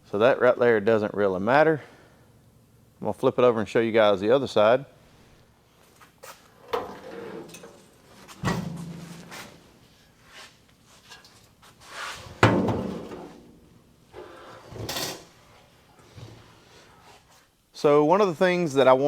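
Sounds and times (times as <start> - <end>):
metal scraping and handling: 6.6 - 13.6.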